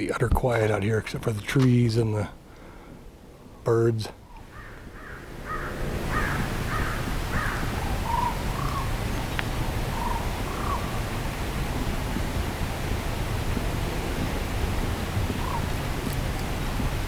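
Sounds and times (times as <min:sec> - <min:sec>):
wind through trees: 0:00.0 - 0:17.0
birds calling: 0:01.6 - 0:11.3, 0:15.2 - 0:16.8.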